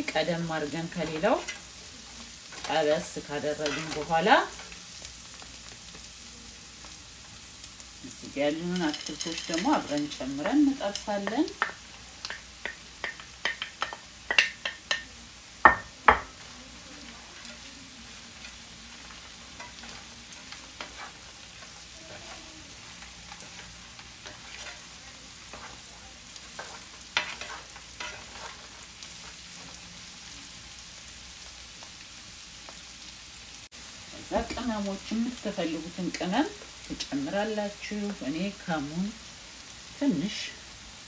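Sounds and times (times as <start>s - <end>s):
vegetables sizzling in a pan: 0.0s - 41.0s
utensil scraping and knocking a pan: 23.3s - 24.9s, 26.6s - 28.7s.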